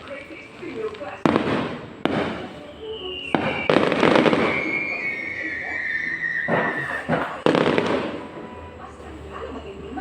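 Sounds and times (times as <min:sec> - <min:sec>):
firework bangs: 0:00.0 - 0:08.6
firework whistle falling in pitch: 0:02.4 - 0:07.2.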